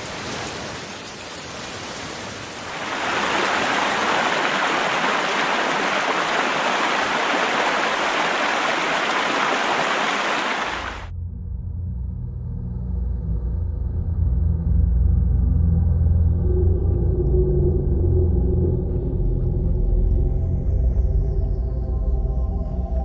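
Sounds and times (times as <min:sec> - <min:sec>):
floodwater rushing: 0:00.0 - 0:11.1
low rumble: 0:11.1 - 0:23.0.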